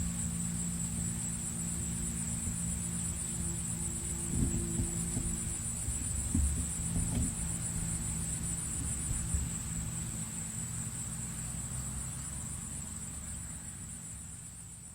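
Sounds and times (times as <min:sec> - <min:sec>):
insects trilling: 0:00.0 - 0:14.9
soft knocks: 0:06.0 - 0:07.9.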